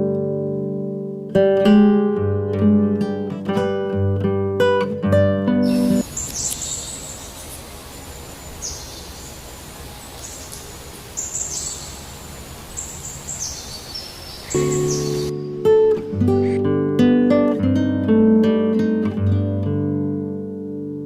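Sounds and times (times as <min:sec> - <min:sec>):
outdoor background hiss: 0:00.0 - 0:21.0
small birds chirping: 0:05.6 - 0:15.4.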